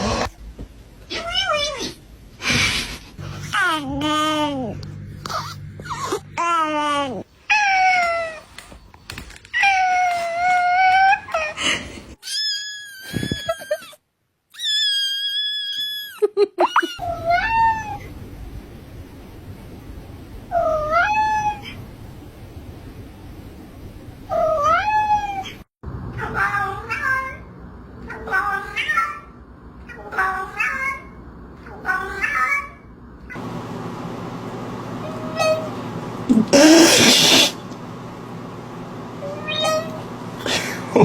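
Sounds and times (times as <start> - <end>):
cat mewing: 36.3 - 37.6
cat harsh cry: 36.5 - 37.6.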